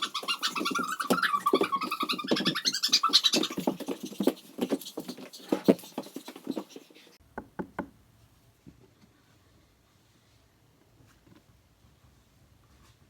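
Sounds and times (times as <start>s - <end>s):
rapid pattering taps: 0.0s - 7.0s.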